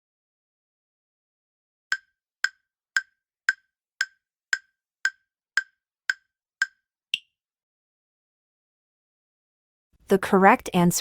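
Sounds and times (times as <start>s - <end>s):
countdown timer ticking: 1.9s - 7.3s.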